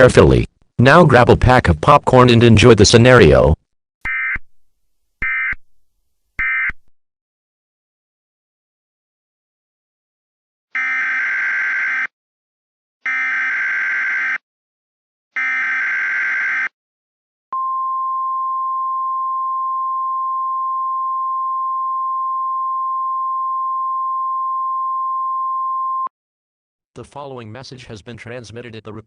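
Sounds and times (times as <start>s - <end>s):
steady single-tone signal: 17.6s - 26.1s.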